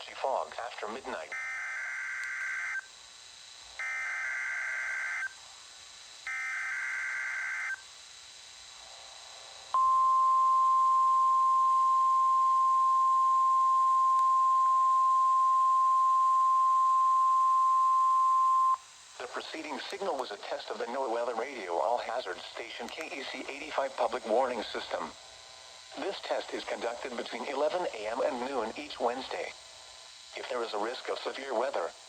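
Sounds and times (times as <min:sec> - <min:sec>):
steady warning alarm tone: 0:01.3 - 0:02.9, 0:03.8 - 0:05.4, 0:06.3 - 0:07.8, 0:09.8 - 0:18.8.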